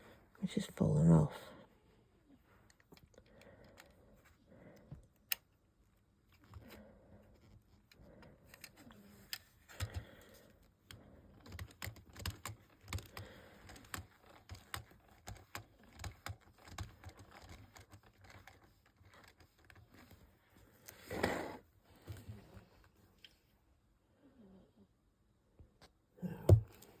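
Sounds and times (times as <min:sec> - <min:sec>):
plastic building blocks clicking: 0:11.3 - 0:20.2.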